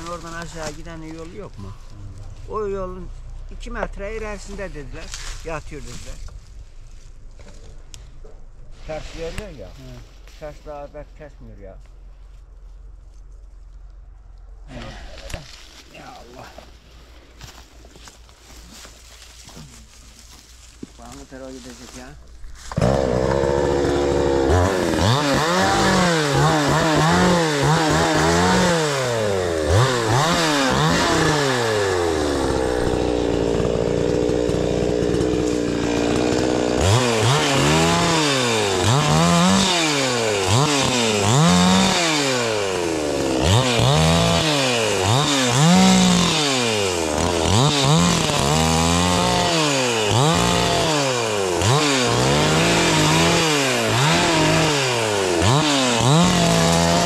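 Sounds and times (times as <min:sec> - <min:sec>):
chainsaw engine revving: 0:22.6 - 0:57.0.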